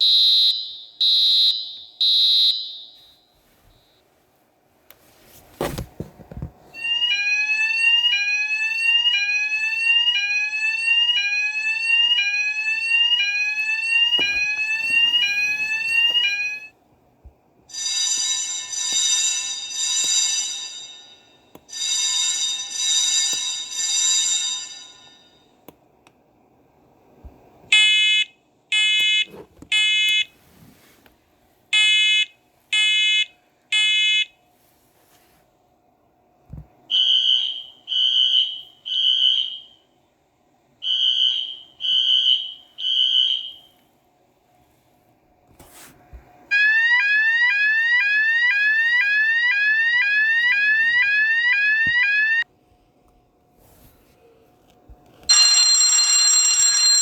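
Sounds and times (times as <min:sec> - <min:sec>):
continuous alarm tone: 0:00.0 - 0:03.2, 0:06.8 - 0:16.7, 0:36.9 - 0:39.8, 0:40.8 - 0:43.7, 0:46.5 - 0:52.4
pure high alarm tone beeps: 0:00.0 - 0:03.2
harsh electronic alarm horn beeps: 0:00.0 - 0:04.0, 0:27.7 - 0:30.3, 0:31.8 - 0:34.3, 0:36.9 - 0:39.8, 0:46.5 - 0:52.4
whooping alarm sweeps: 0:06.8 - 0:16.7, 0:40.8 - 0:43.7, 0:46.5 - 0:52.4.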